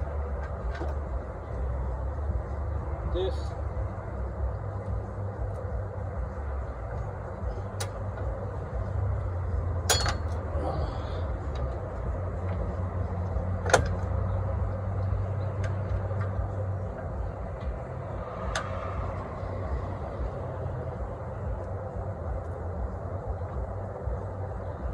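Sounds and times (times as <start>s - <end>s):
low mechanical hum: 0.0s - 24.9s
metallic clicks of tools and springs: 9.8s - 10.5s.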